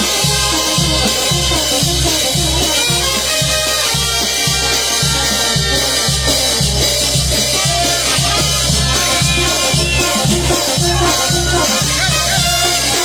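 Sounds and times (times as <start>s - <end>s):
brass band horns: 0.0s - 13.0s
percussion: 0.0s - 13.0s
bass drum thumps: 7.1s - 12.1s.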